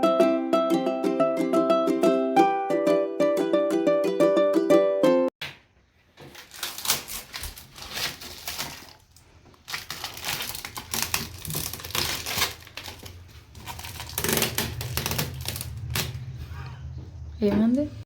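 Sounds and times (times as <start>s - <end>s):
crinkling and rustling handling noise: 5.5s - 17.8s.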